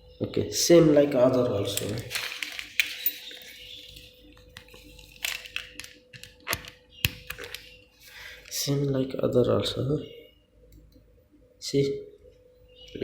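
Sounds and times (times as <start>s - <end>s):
clicks of cable connectors: 1.6s - 3.6s, 4.6s - 7.7s.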